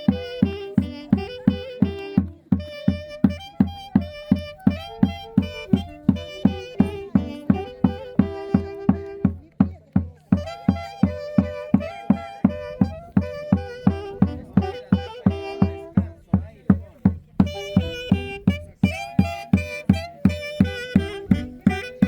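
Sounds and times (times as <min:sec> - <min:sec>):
steady drum beat: 0:00.0 - 0:22.0
sustained melody notes: 0:17.5 - 0:22.0.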